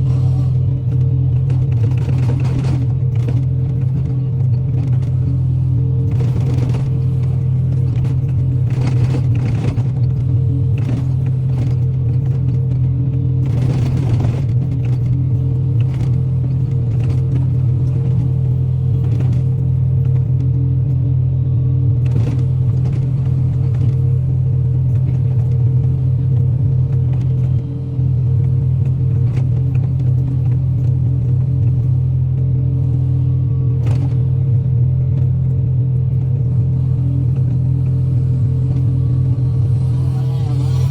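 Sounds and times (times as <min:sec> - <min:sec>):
excavator diesel engine droning: 0:00.0 - 0:40.9.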